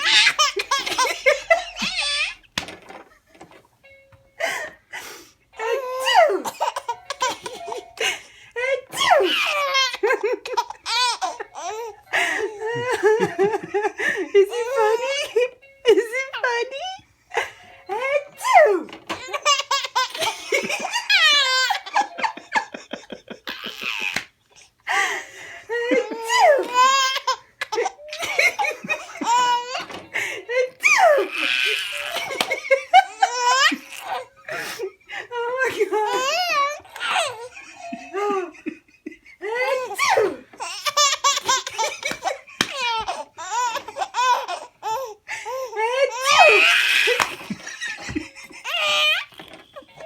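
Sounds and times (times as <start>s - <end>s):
baby laughing: 0.0s - 2.4s, 5.6s - 16.8s, 17.4s - 24.7s, 25.7s - 34.9s, 35.6s - 50.0s
baby squealing: 8.9s - 10.0s, 30.8s - 32.3s, 39.9s - 47.9s, 48.6s - 49.4s.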